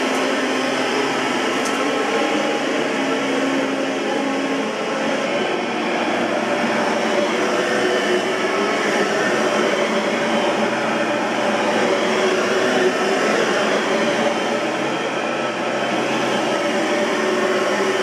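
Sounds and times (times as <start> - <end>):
upright vacuum cleaner running: 0.0 - 18.0.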